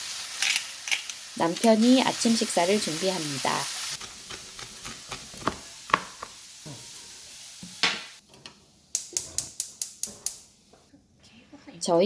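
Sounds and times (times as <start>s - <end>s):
food sizzling in a frying pan: 0.0s - 8.2s.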